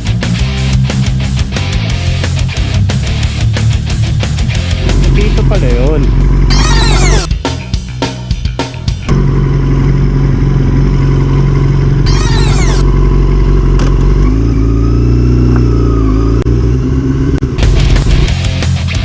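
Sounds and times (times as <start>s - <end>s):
heavy rock music with drums: 0.0s - 9.3s, 17.6s - 19.0s
motorcycle engine running: 0.0s - 19.0s.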